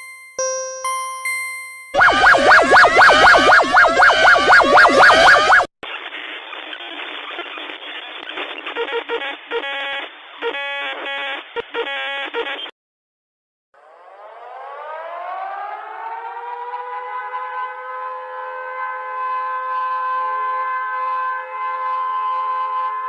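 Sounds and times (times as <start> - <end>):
civil defence siren winding up: 1.9 - 5.7, 13.8 - 23.0
warbling alert tone: 2.0 - 5.7.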